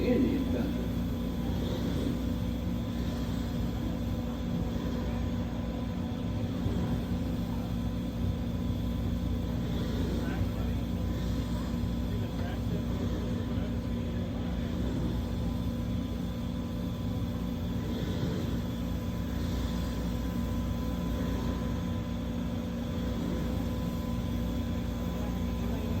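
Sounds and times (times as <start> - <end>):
faint hum tones: 0.0 - 26.0
riverboat machinery drone: 0.0 - 26.0.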